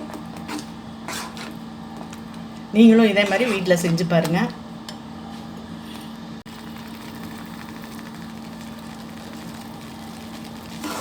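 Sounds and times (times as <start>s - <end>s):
machine hum with pitched tone: 5.3s - 11.0s.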